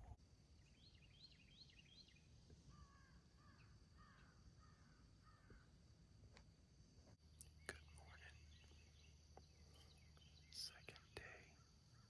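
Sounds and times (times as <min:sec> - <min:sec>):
quiet woodland background: 0:00.0 - 0:12.0
crow cawing faintly: 0:02.7 - 0:05.7.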